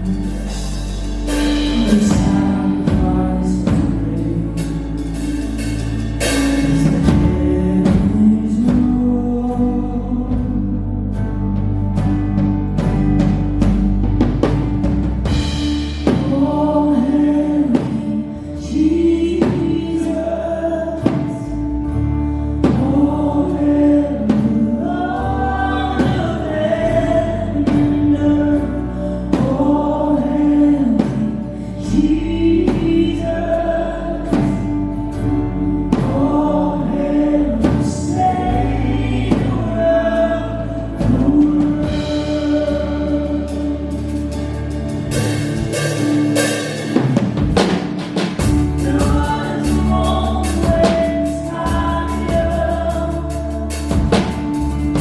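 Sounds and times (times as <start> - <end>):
group singing a slow praise song: 0.0 - 11.1, 15.4 - 21.9, 22.6 - 47.1, 48.1 - 55.0
long held bass notes: 0.0 - 55.0.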